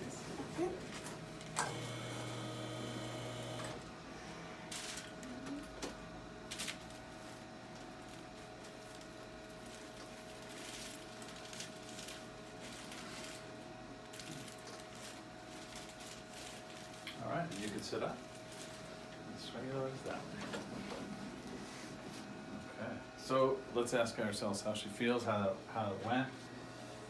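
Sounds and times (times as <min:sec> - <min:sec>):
faint room hum: 0:00.0 - 0:27.0
small motor humming: 0:01.6 - 0:03.8.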